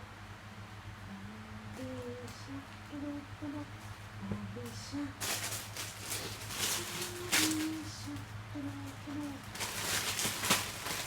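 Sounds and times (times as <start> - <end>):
person humming: 1.0 - 5.3, 6.2 - 9.6
rustling: 3.5 - 11.0.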